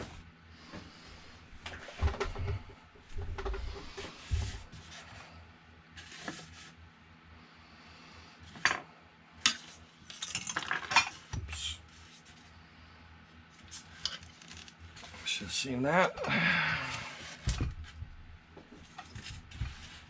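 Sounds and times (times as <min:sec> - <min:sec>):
handling parts on a workbench: 0:08.5 - 0:08.8, 0:09.4 - 0:11.7.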